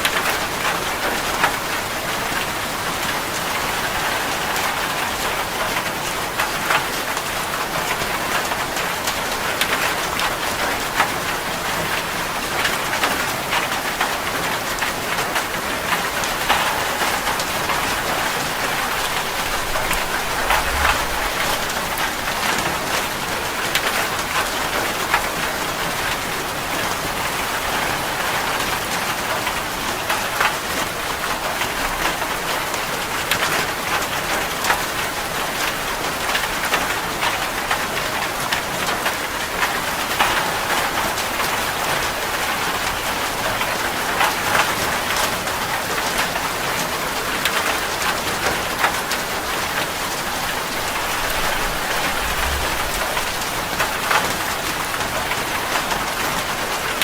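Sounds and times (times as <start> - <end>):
heavy rain on a metal roof: 0.0 - 57.0
low rumble: 18.6 - 23.2, 50.2 - 54.7.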